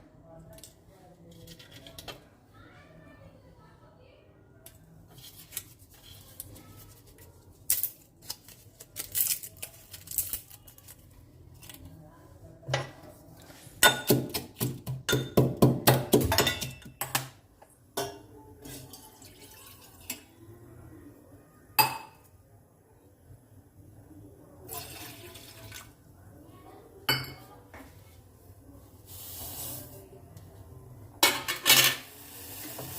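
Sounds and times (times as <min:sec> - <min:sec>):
kitchen utensils clinking: 0:15.1 - 0:17.4, 0:31.2 - 0:32.1.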